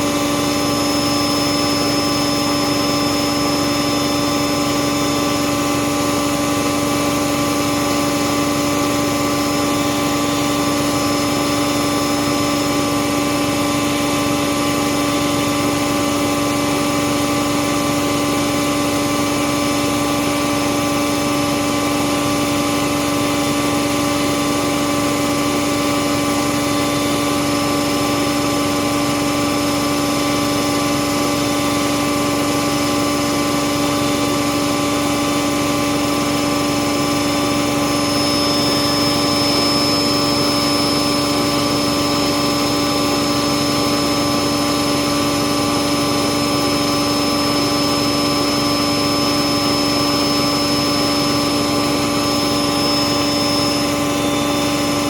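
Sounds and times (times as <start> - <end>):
washing machine running: 0.0 - 55.0.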